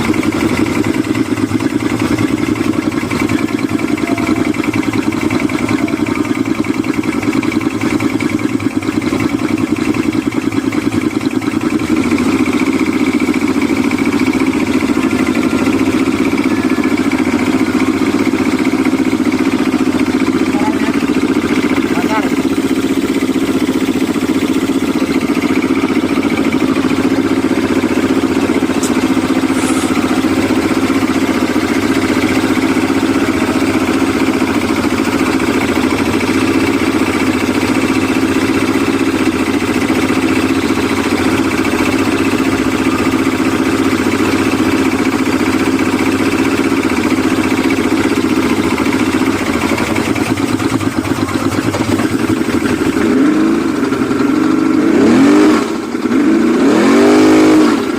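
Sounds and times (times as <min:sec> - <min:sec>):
outboard motor running: 0:00.0 - 0:57.9.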